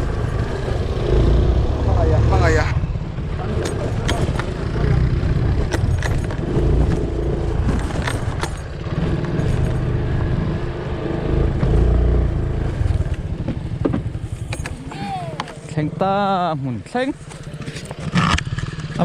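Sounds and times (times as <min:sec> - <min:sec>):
vehicle engine rumble: 0:00.0 - 0:19.0
knocks and rattles: 0:03.5 - 0:10.0.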